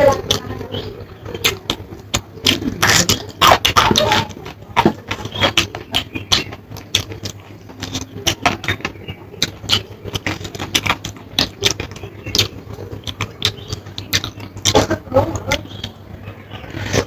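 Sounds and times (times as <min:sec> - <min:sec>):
steady low hum: 0:00.0 - 0:17.0
lip smacks: 0:01.2 - 0:16.0
person chewing: 0:01.2 - 0:16.0.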